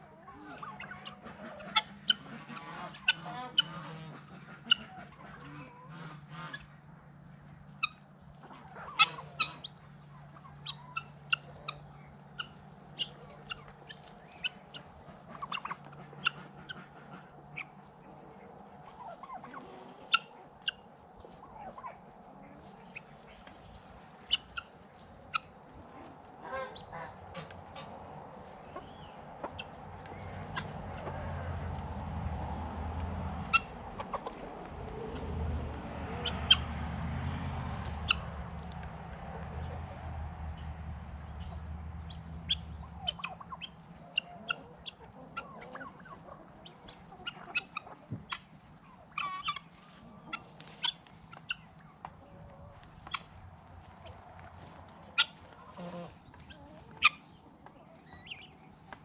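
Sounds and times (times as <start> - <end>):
poultry calls: 0.0 - 59.0
beaks pecking at feed: 22.7 - 48.4.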